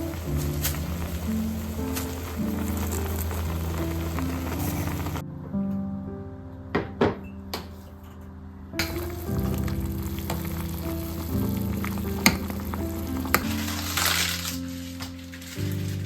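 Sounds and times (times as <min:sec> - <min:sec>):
food sizzling in a pan: 0:00.0 - 0:05.2, 0:08.8 - 0:16.0
soft background music: 0:00.0 - 0:16.0.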